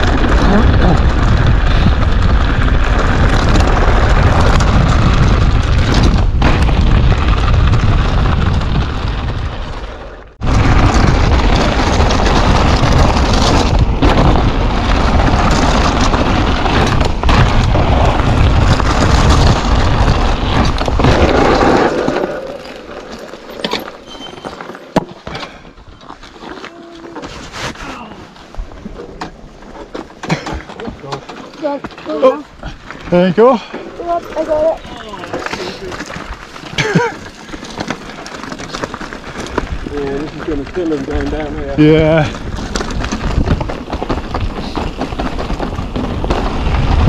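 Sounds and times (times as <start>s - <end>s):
wind buffeting microphone: 0.0s - 21.7s, 39.2s - 47.0s.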